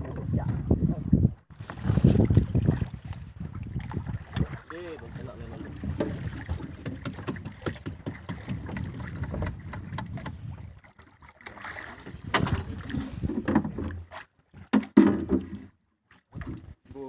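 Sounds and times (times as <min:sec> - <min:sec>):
wind on microphone: 0:00.0 - 0:10.8, 0:11.9 - 0:13.7
water against boat hull: 0:01.5 - 0:17.0
knocks and clatter on board: 0:05.5 - 0:10.5, 0:12.0 - 0:15.7.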